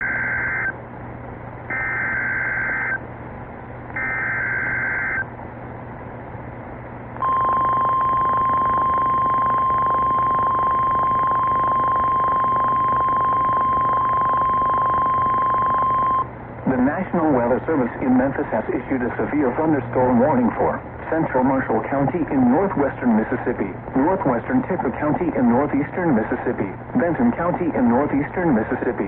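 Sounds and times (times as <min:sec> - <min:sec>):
steady alarm tone: 0:00.0 - 0:00.8, 0:01.7 - 0:03.0, 0:04.0 - 0:05.3, 0:07.2 - 0:16.3
low hum: 0:00.0 - 0:27.6
radio hiss: 0:15.2 - 0:29.0.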